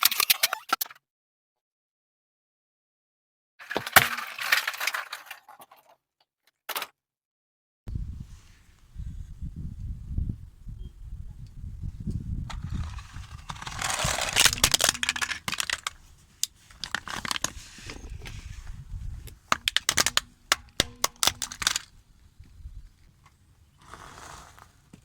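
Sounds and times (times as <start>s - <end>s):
car tyre crushing crunchy objects: 12.5s - 18.5s, 19.1s - 23.2s.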